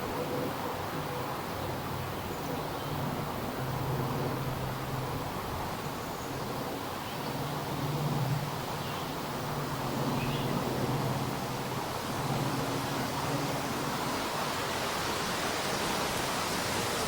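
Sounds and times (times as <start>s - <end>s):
distant aircraft drone: 0.0s - 17.0s
forest ambience: 8.5s - 17.0s.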